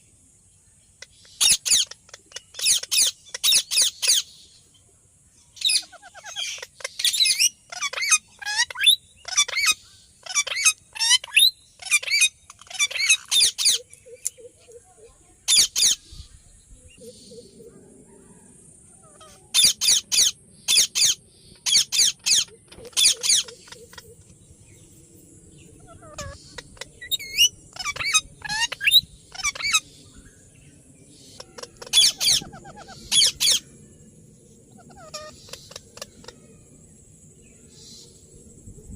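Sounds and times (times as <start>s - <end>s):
parakeet shrill calls: 1.4s - 4.3s, 5.6s - 13.8s, 15.5s - 16.0s, 19.5s - 24.1s, 25.8s - 29.9s, 31.4s - 33.6s.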